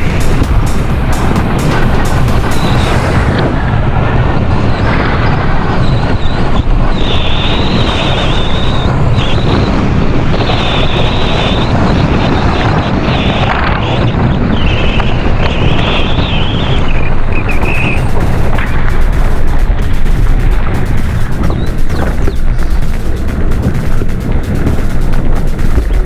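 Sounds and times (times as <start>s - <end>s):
high buzz: 0.0s - 3.6s, 17.3s - 26.0s
wind buffeting microphone: 0.0s - 26.0s
tyres rumbling on dirt: 17.1s - 26.0s.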